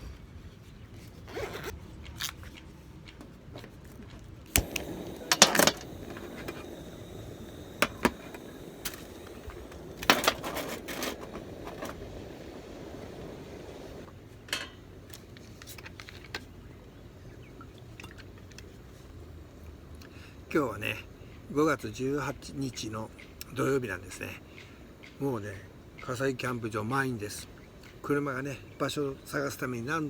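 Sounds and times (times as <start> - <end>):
cooking gear clinking and knocking: 4.5 - 14.8.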